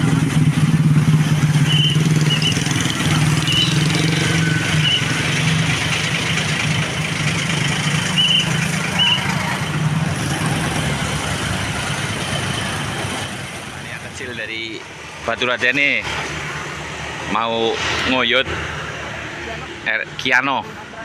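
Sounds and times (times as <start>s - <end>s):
diesel engine idling: 4.5s - 15.0s.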